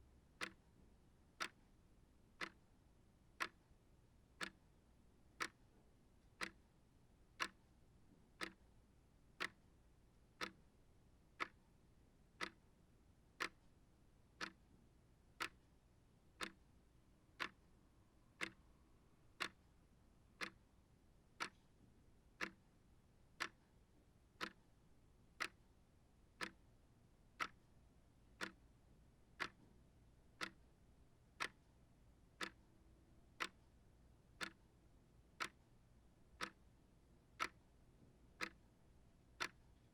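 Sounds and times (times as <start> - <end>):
clock ticking: 0.4 - 0.7, 2.4 - 2.6, 3.4 - 3.6, 4.4 - 4.6, 5.4 - 5.6, 6.4 - 6.6, 7.4 - 7.6, 8.4 - 8.6, 9.4 - 9.6, 10.4 - 10.6, 12.4 - 12.6, 13.4 - 13.7, 14.4 - 14.6, 15.4 - 15.7, 16.4 - 16.6, 17.4 - 17.7, 18.4 - 18.6, 20.4 - 20.6, 21.4 - 21.6, 22.4 - 22.6, 23.4 - 23.6, 24.4 - 24.6, 25.4 - 25.6, 26.4 - 26.6, 27.4 - 27.6, 28.4 - 28.6, 29.4 - 29.7, 30.4 - 30.6, 31.4 - 31.6, 32.4 - 32.6, 33.4 - 33.7, 34.4 - 34.6, 35.4 - 35.6, 36.4 - 36.6, 37.4 - 37.6, 38.4 - 38.6, 39.4 - 39.9.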